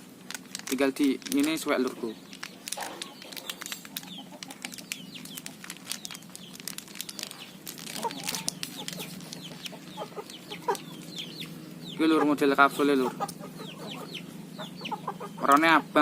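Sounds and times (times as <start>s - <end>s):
capsule packet crinkling: 0.0s - 11.1s
chicken clucking: 2.8s - 6.4s, 7.2s - 16.0s.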